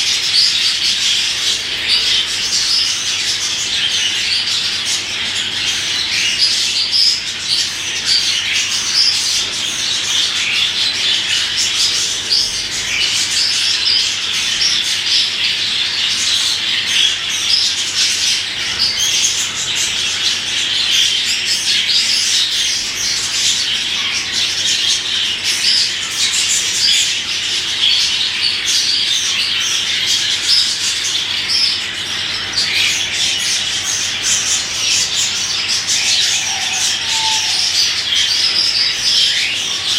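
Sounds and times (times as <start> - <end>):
budgerigar chattering: 0.0 - 39.9.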